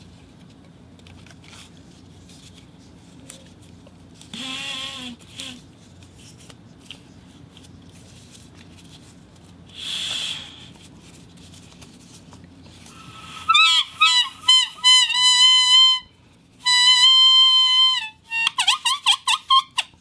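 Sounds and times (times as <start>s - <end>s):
rubber whistle tooting: 4.3s - 5.6s, 13.3s - 20.0s.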